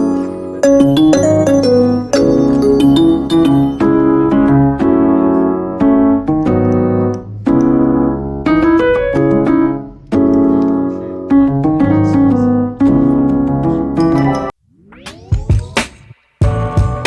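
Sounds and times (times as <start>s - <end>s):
piano chords ringing: 0.0s - 4.4s.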